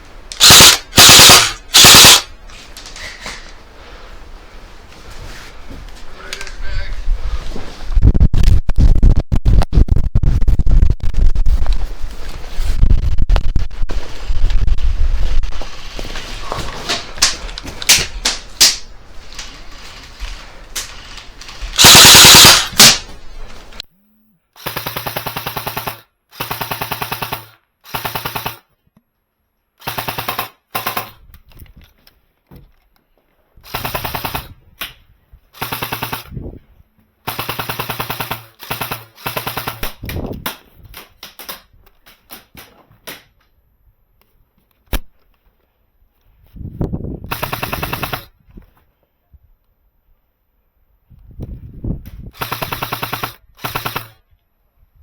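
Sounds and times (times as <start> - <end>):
airsoft guns firing: 0.3 - 2.4, 17.2 - 18.9, 21.7 - 23.2, 24.6 - 28.6, 29.8 - 31.2, 33.6 - 34.6, 35.6 - 36.3, 37.2 - 40.1, 47.3 - 48.3, 52.4 - 54.2.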